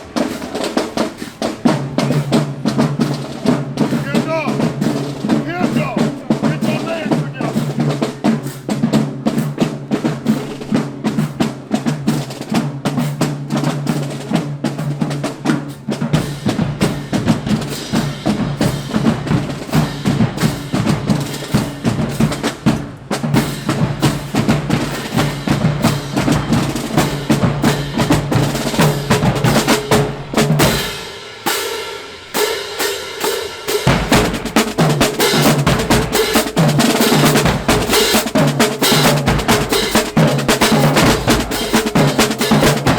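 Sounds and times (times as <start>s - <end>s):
rapid snare drums: 0.0s - 42.9s
bass drums: 14.9s - 31.1s, 33.6s - 42.9s.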